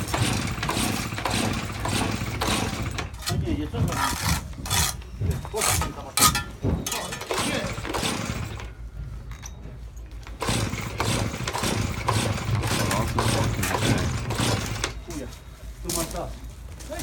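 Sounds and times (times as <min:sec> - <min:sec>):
cut-off saw engine running: 0:10.4 - 0:15.0.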